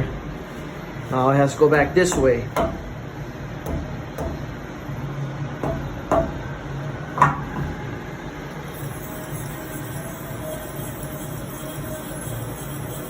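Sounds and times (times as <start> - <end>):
steady low hum: 0.0 - 13.0
rubber mallet tapping steel: 2.0 - 2.9, 3.6 - 4.6, 5.6 - 6.5, 7.2 - 7.7.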